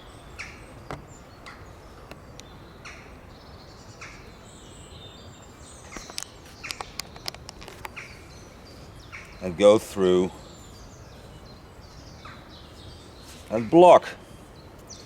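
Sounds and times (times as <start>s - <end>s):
outdoor background noise: 0.0s - 15.0s
rope clicking and rustling: 5.9s - 8.1s.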